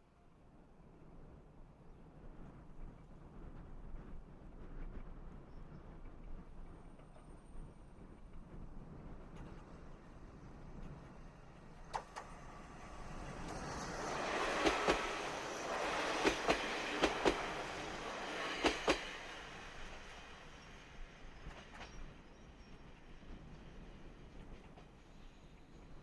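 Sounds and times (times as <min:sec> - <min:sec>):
railcar rumble: 0:06.3 - 0:26.0
wheels clicking over rail joints: 0:11.6 - 0:20.2.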